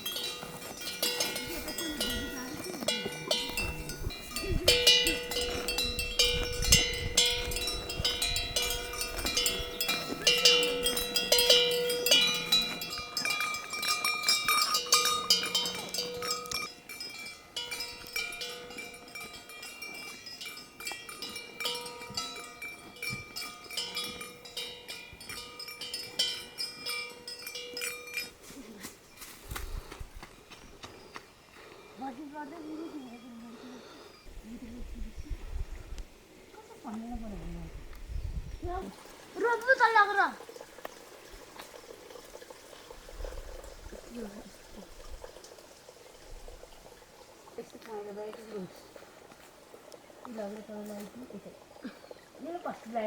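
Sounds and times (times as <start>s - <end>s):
cow bells clanking: 0.0s - 28.5s.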